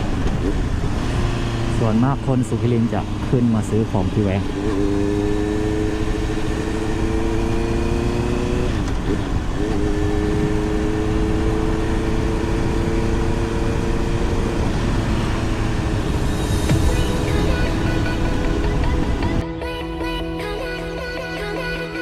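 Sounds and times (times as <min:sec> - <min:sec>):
motorcycle engine hum: 0:00.0 - 0:19.4
wind rushing over microphone: 0:04.4 - 0:19.4.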